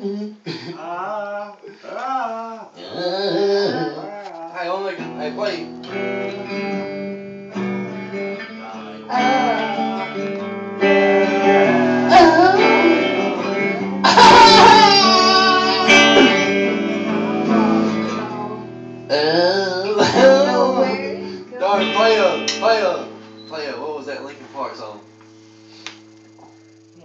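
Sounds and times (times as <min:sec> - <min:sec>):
person singing: 0:00.0 - 0:04.6, 0:06.1 - 0:23.1
guitar strumming chords: 0:04.9 - 0:27.0.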